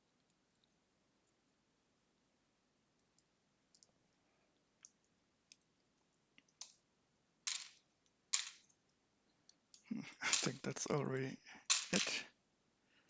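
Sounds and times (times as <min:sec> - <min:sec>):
plastic pieces clicking: 0:07.5 - 0:07.8, 0:08.4 - 0:08.7, 0:11.7 - 0:12.2.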